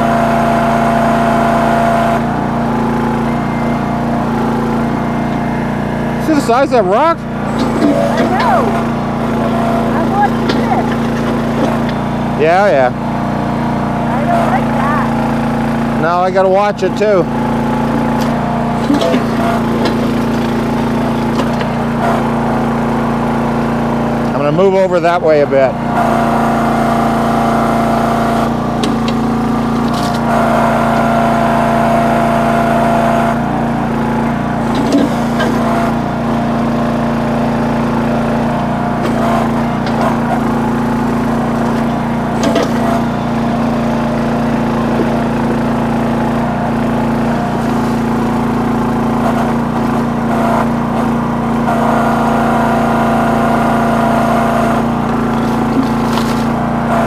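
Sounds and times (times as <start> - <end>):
small engine running under load: 0.0 - 57.0
bucket knocking and scraping rocks: 7.4 - 12.1, 17.8 - 22.4, 34.6 - 36.8, 37.9 - 50.2, 54.9 - 56.7.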